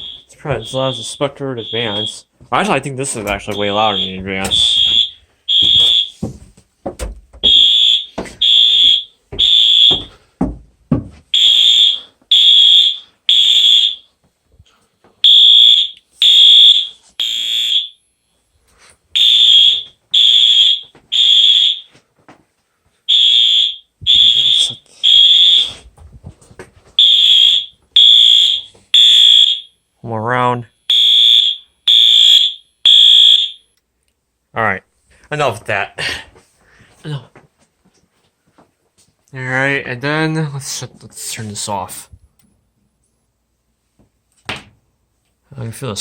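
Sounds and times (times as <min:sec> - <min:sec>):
fire alarm horn beeping: 0:00.0 - 0:02.3, 0:03.4 - 0:06.2, 0:07.4 - 0:10.1, 0:11.3 - 0:14.1, 0:15.2 - 0:18.2, 0:19.2 - 0:22.0, 0:23.1 - 0:25.8, 0:27.0 - 0:29.9, 0:30.8 - 0:33.8
dull knocks: 0:09.4 - 0:11.2.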